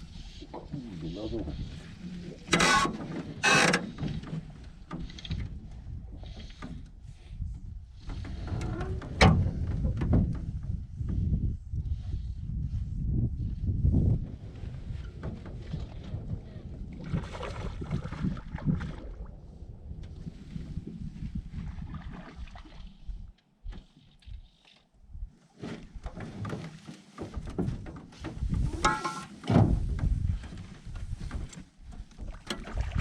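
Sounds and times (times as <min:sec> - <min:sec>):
gusty wind on microphone: 0:04.1 - 0:23.3, 0:27.4 - 0:28.9, 0:29.5 - 0:33.0.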